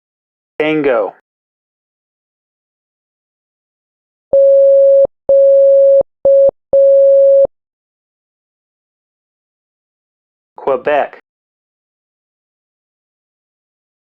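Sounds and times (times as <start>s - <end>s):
morse code beeps: 4.4s - 7.5s.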